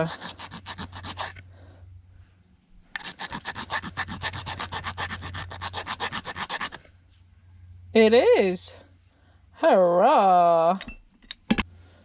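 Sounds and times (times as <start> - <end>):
scraping motor coil: 0.0 - 1.4, 3.0 - 6.9.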